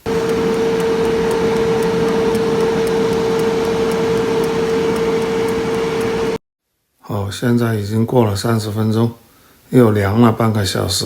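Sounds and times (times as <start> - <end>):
air fryer fan whirring: 0.0 - 6.4
faint regular ticking: 0.0 - 6.4.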